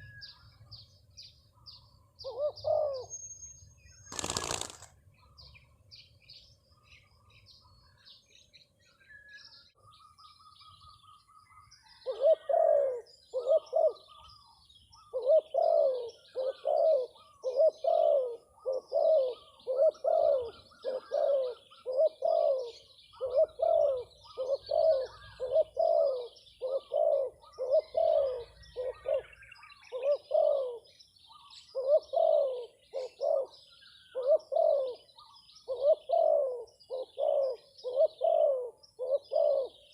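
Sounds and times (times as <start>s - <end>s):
small birds chirping: 0.0s - 39.9s
dove cooing: 2.2s - 3.1s, 4.1s - 4.9s, 11.9s - 14.3s, 15.0s - 39.9s.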